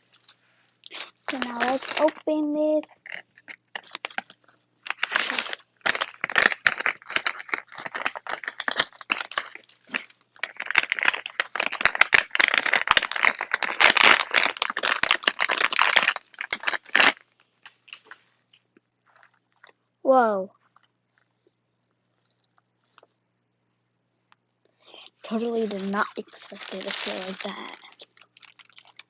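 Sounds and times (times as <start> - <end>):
plastic packaging crinkling: 0.0 - 18.2, 19.0 - 19.8, 24.9 - 29.0.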